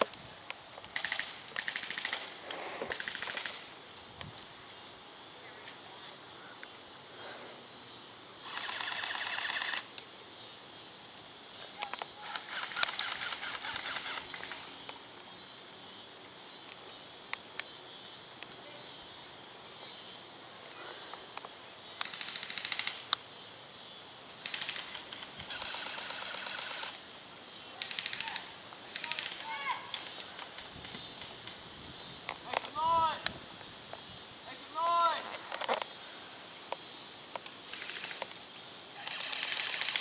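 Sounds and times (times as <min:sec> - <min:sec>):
airsoft guns firing bursts: 0:01.0 - 0:02.3, 0:08.5 - 0:09.8, 0:12.2 - 0:14.6, 0:24.4 - 0:27.0, 0:27.8 - 0:30.1, 0:39.0 - 0:40.0.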